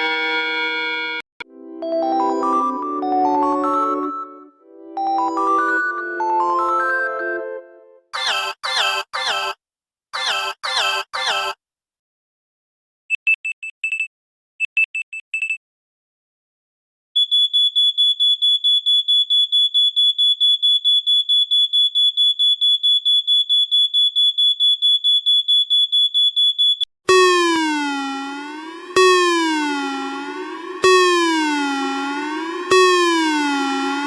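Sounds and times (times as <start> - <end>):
short high phone beeps: 10.2 - 11.6.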